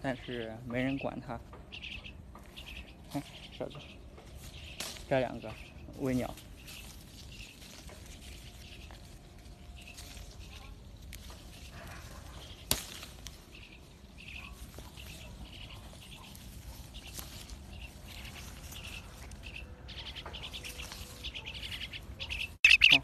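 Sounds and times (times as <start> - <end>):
birds chirping: 0.0 - 23.0
low outdoor rumble: 0.0 - 23.0
sharp snap: 12.6 - 13.3.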